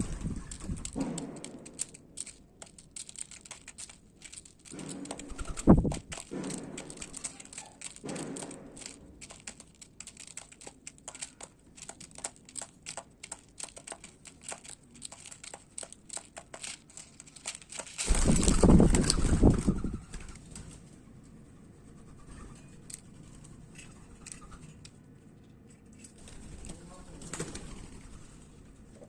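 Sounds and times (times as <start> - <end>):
rustling burst: 0.0 - 20.4
birds cracking seeds: 0.0 - 20.8, 22.3 - 25.0.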